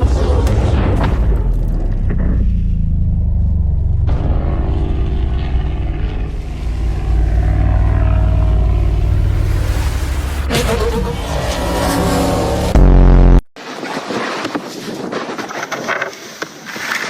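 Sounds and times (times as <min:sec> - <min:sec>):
engine rumbling: 0:00.0 - 0:13.4.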